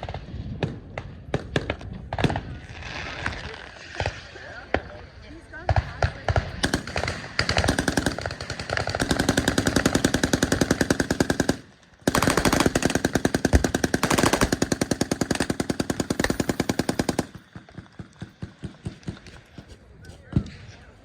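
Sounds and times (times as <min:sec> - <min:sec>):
machine guns firing automatic bursts: 0:05.7 - 0:19.3.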